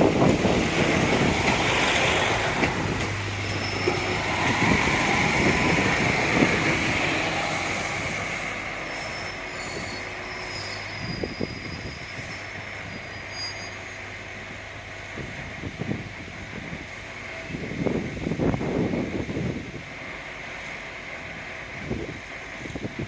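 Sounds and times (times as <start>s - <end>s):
train rumbling past: 0.0s - 23.0s
thin high-pitched squeals: 3.4s - 4.3s, 8.8s - 14.0s.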